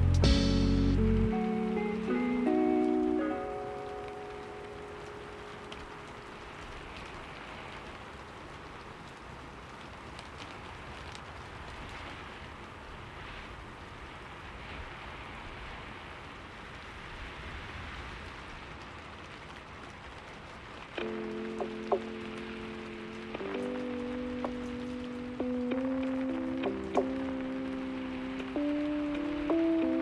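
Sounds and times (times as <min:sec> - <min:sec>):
low rumble: 0:00.0 - 0:01.4
sustained piano-like notes: 0:00.0 - 0:06.5, 0:21.0 - 0:30.0
fire crackling: 0:00.0 - 0:30.0.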